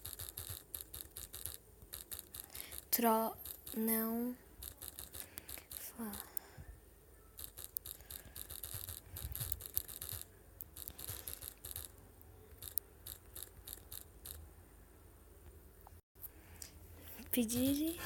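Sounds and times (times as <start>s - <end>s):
fingers tapping on a phone: 0.0s - 6.6s, 7.4s - 14.4s.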